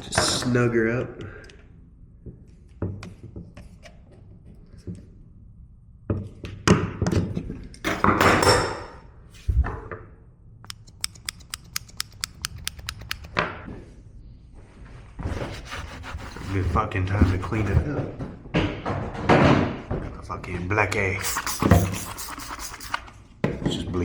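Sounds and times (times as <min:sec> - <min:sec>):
rapid sharp clicks: 0:10.7 - 0:13.4.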